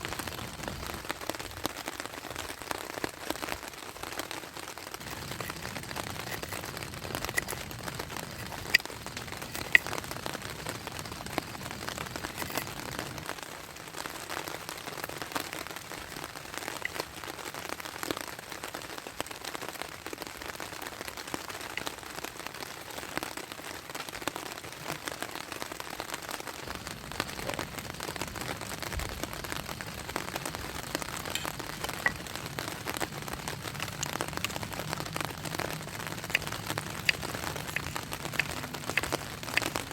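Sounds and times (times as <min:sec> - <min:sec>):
steady rain: 0:00.0 - 0:39.9
sharp ticks of drops: 0:31.2 - 0:39.9.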